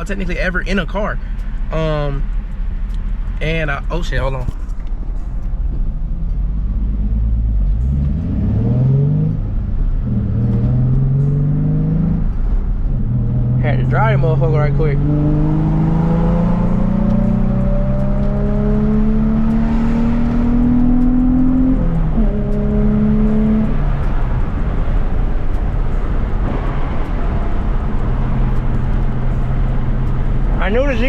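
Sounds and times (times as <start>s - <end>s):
car engine accelerating: 0.0s - 31.0s
road rumble: 0.0s - 31.0s.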